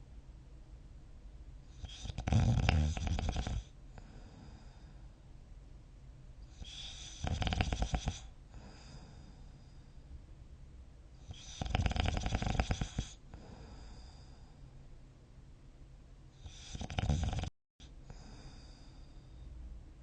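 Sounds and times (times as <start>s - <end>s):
person snoring: 1.8s - 4.9s, 6.6s - 9.4s, 11.3s - 14.3s, 16.4s - 17.5s.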